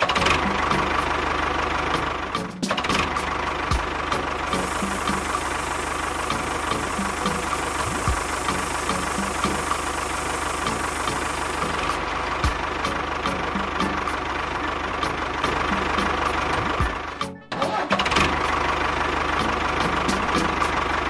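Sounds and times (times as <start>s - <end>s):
engine idling: 0.2s - 2.4s, 3.0s - 17.2s, 18.3s - 21.0s.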